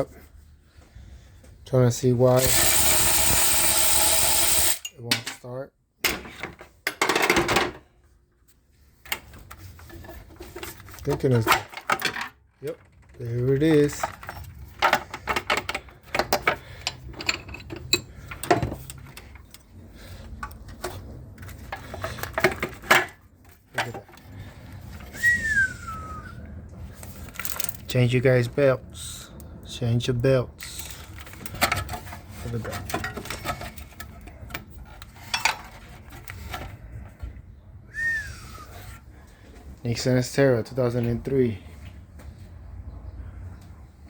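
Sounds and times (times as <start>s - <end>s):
engine parts clicking and tapping: 9.1s - 24.8s.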